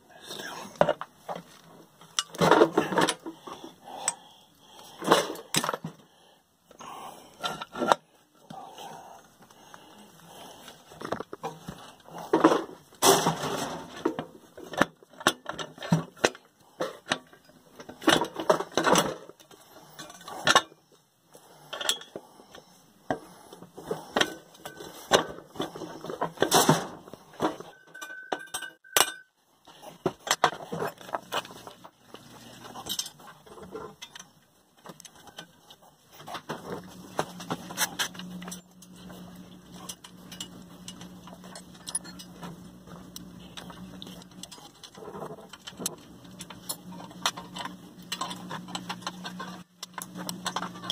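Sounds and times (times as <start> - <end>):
low steady hum: 0.0 - 50.9
metal tools clinking and clanking: 2.0 - 3.4, 21.7 - 22.2, 24.0 - 29.3, 32.6 - 34.3, 39.7 - 42.6.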